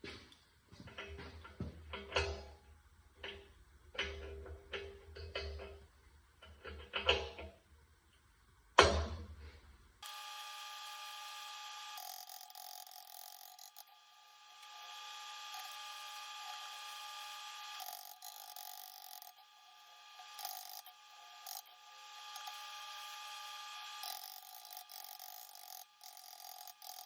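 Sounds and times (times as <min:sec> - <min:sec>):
welder hiss and buzz: 0:10.0 - 0:27.0.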